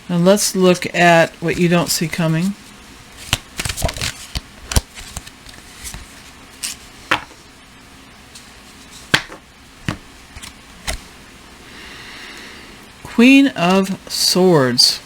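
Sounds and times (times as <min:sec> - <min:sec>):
cards being shuffled: 0:01.6 - 0:07.4, 0:08.4 - 0:11.0.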